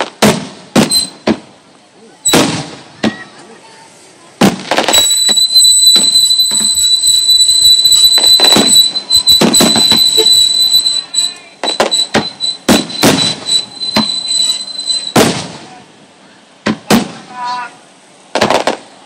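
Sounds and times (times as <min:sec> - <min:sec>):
fireworks bangs: 0:00.0 - 0:01.6, 0:02.2 - 0:03.3, 0:04.4 - 0:15.7, 0:16.6 - 0:17.3, 0:18.3 - 0:18.9
high-pitched whine: 0:00.9 - 0:01.2, 0:04.9 - 0:15.2.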